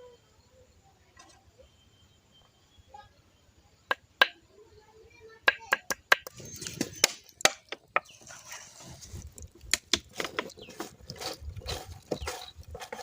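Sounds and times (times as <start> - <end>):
sharp knocks and clicks: 5.5 - 8.1.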